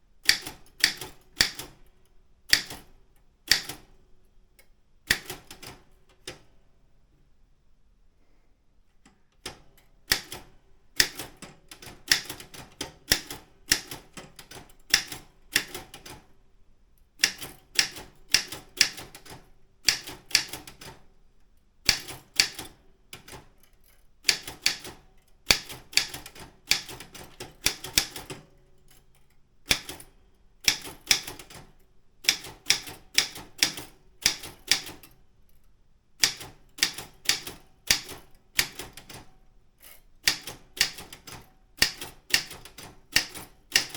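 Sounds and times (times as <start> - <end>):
typewriter key clacks: 21.9 - 23.5, 24.2 - 29.1, 29.7 - 31.7, 32.3 - 35.2, 36.2 - 39.3, 39.9 - 43.9.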